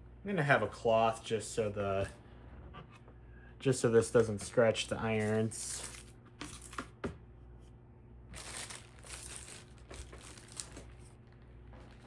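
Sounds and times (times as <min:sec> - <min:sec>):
packaging crinkling and rustling: 0:08.3 - 0:12.0.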